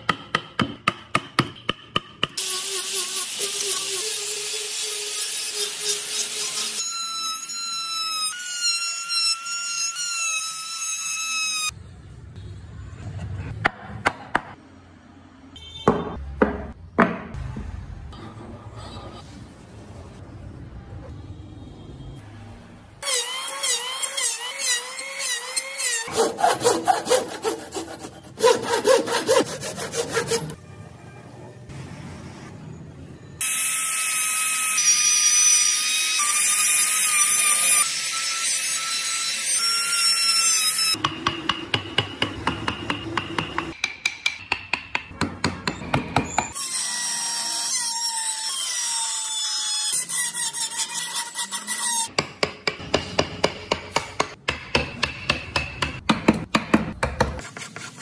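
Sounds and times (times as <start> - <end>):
hand sawing or rasping wood: 23.1 - 30.6.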